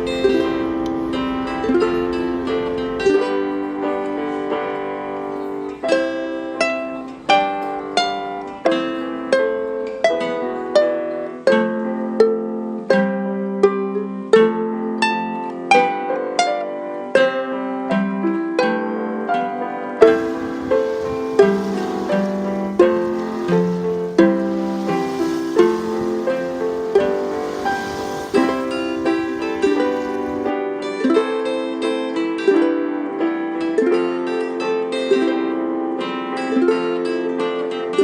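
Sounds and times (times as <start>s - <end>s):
plucked string melody: 0.0s - 38.0s.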